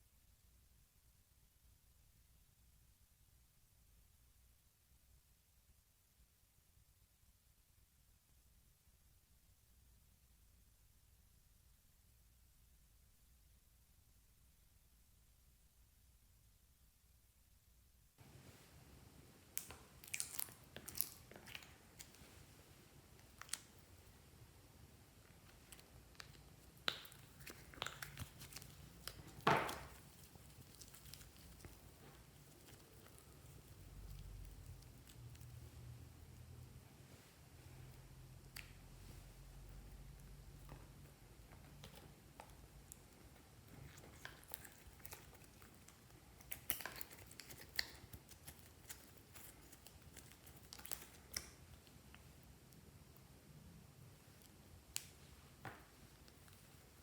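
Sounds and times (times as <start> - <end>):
slime squelch: 19.4 - 57.0.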